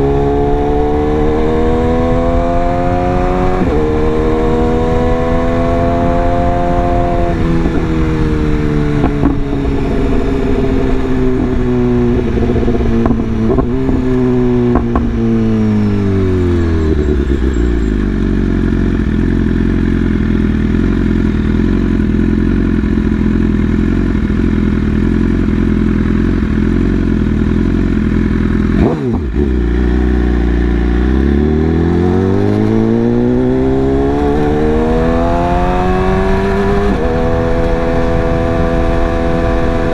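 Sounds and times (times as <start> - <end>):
motorcycle engine: 0.0 - 39.9.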